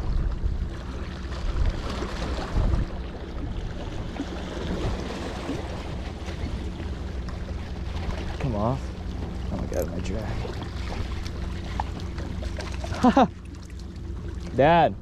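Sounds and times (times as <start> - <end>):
outdoor bay noise: 0.0 - 15.0
wind buffeting microphone: 1.4 - 6.8.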